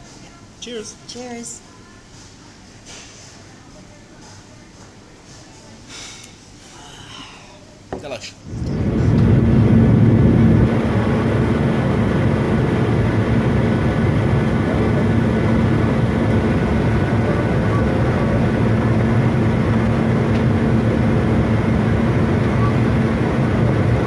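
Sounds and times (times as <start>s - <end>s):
jet engine drone: 8.4s - 24.0s
rushing air: 8.4s - 24.0s.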